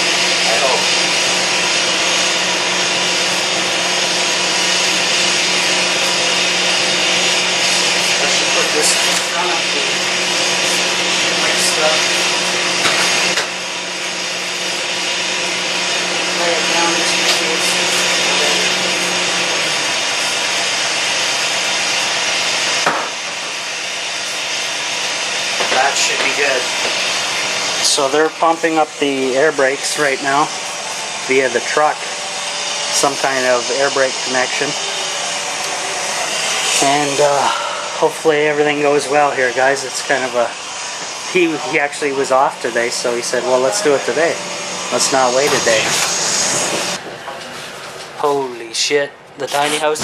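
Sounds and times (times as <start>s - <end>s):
motor humming and hissing: 0.0s - 50.0s
air brake hissing: 35.9s - 38.2s.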